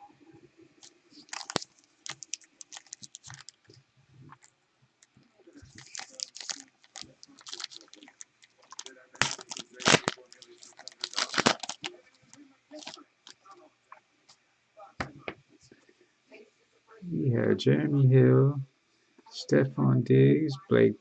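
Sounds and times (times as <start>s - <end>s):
plastic packaging crinkling: 0.8s - 13.6s.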